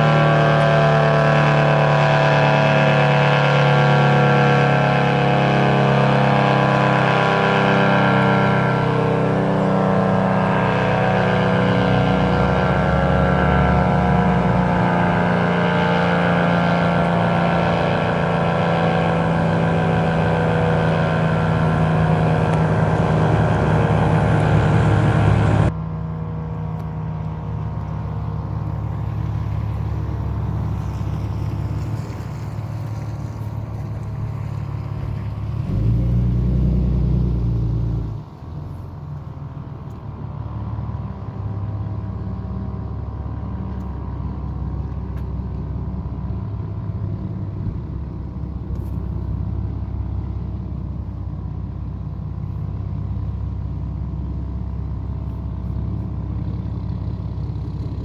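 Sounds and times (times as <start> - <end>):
warning siren steady tone: 0.0 - 31.6.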